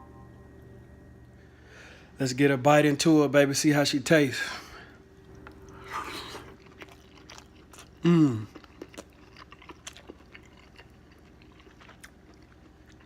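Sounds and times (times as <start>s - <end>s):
person chewing with wet clicks: 5.2s - 13.0s.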